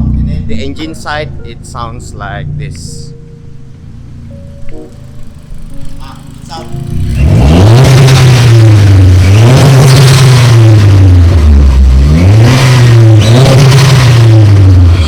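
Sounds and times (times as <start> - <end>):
car engine revving: 3.4 - 15.0.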